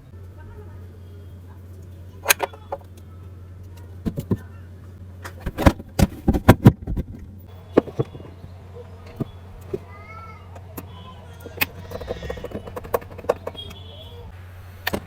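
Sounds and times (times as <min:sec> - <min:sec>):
steady low hum: 0:00.0 - 0:15.0
sharp clicks and knocks: 0:10.6 - 0:13.8.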